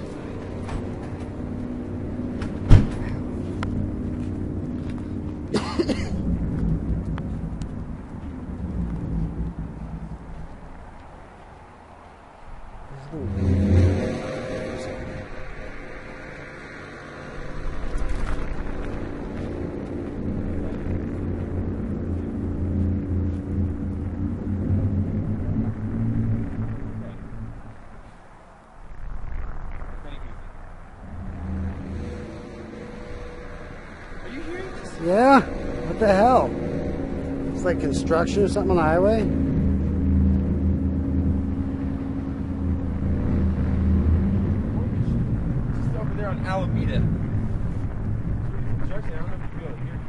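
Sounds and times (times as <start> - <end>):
low steady drone: 0.0 - 50.0
short rushing noise: 13.0 - 19.8.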